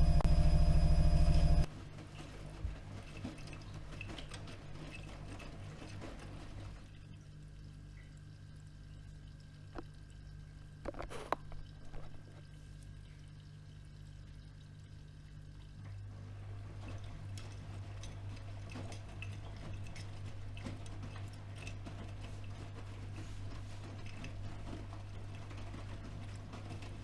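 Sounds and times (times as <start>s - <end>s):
faint high whine: 0.0s - 1.7s
washing machine motor hum: 0.0s - 1.7s
water and laundry sloshing: 1.7s - 27.0s.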